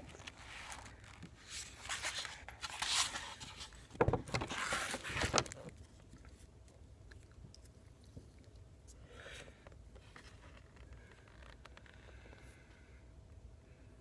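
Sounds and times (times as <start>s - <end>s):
packaging rustling and scraping: 0.0s - 6.0s.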